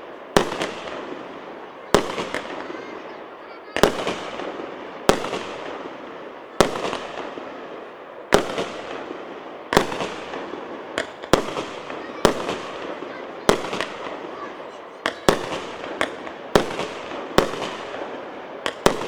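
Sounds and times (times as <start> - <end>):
fireworks bangs: 0.0 - 19.0
fireworks crackling hiss: 0.0 - 19.0.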